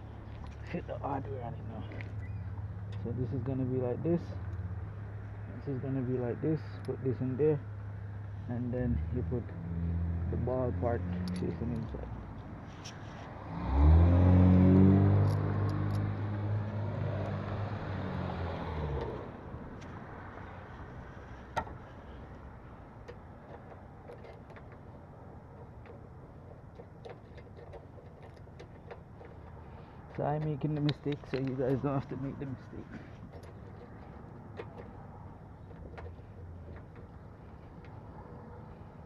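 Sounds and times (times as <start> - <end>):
faint handling clicks: 26.8 - 35.0.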